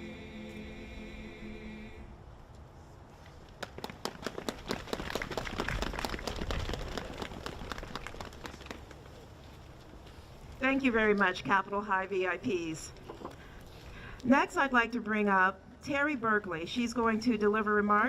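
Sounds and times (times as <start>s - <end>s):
group singing a held chord: 0.0s - 2.2s
crowd applauding: 3.6s - 9.1s.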